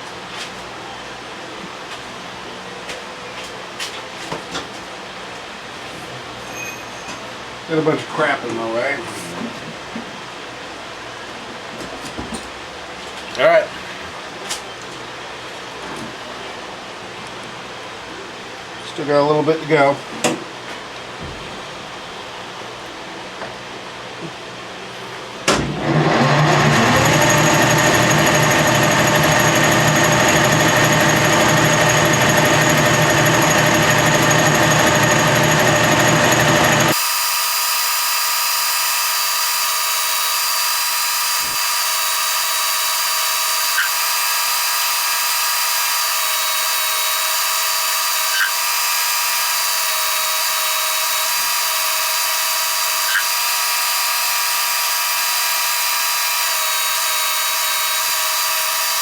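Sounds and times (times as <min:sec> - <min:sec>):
milling machine cutting steel: 0:25.8 - 0:59.0.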